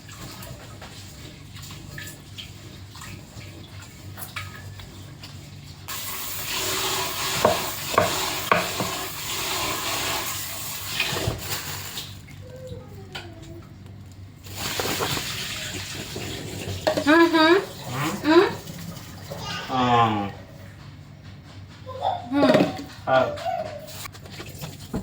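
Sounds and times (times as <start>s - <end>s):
water running hard: 0.0s - 12.5s, 14.4s - 20.4s.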